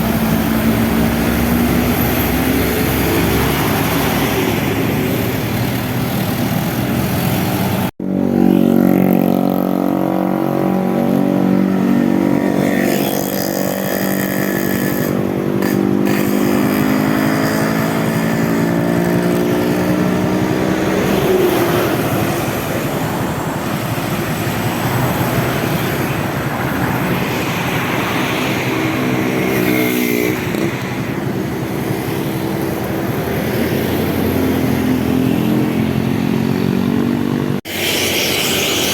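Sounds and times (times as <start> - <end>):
loud engine running: 0.0 - 8.5
road traffic passing: 0.0 - 38.9.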